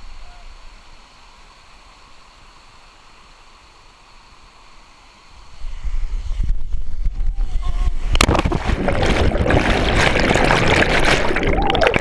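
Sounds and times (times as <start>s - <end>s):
churning gurgling water: 8.1s - 12.0s
loud splash: 8.1s - 12.0s.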